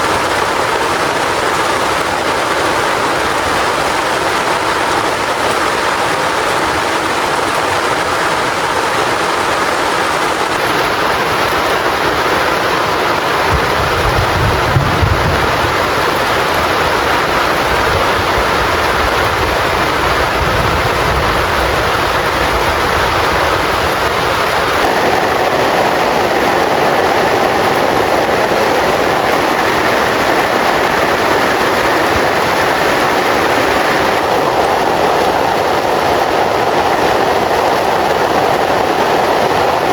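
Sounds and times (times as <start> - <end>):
heavy rain falling: 0.0 - 39.9
deep low rumble: 13.6 - 16.0.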